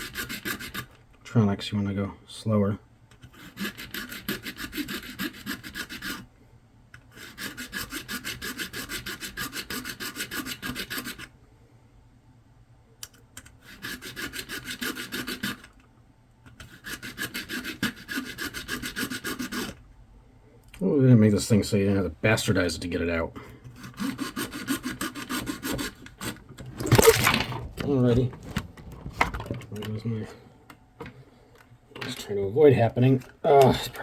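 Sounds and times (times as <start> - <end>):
tool scraping plastic: 0.0 - 1.0, 3.2 - 6.3, 7.0 - 11.3, 13.4 - 15.8, 16.5 - 19.8, 23.7 - 29.9.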